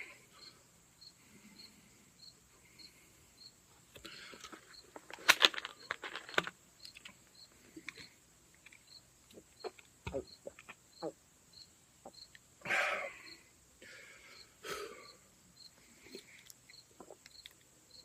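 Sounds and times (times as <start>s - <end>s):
cricket chirping: 0.0s - 18.0s
clicks and rustling: 3.9s - 7.2s.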